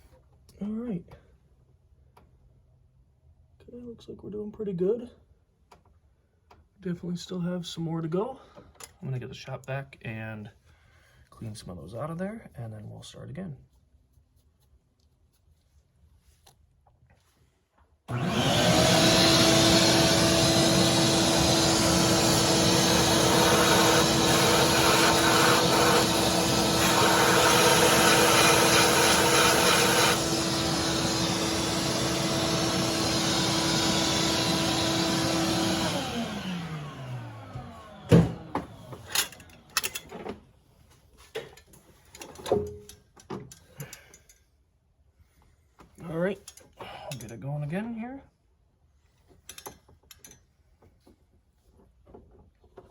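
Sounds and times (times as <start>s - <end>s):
shop vac running with motor whine: 18.1s - 39.8s.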